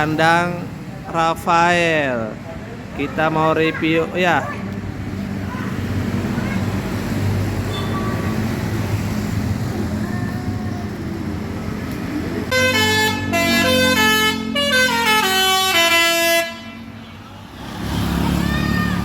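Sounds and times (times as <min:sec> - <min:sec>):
bus engine running: 0:02.4 - 0:19.0
bus horn playing a tune: 0:12.5 - 0:17.0.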